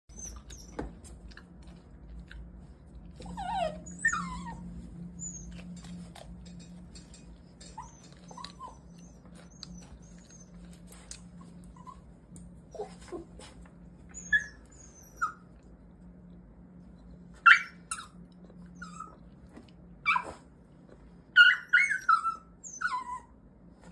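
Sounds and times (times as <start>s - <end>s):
dog whining: 0.1s - 1.0s, 3.2s - 15.6s, 17.4s - 19.3s, 20.0s - 20.4s, 21.3s - 23.4s
dog squeaking: 3.3s - 5.9s, 7.7s - 10.6s, 14.1s - 15.4s, 21.4s - 23.3s.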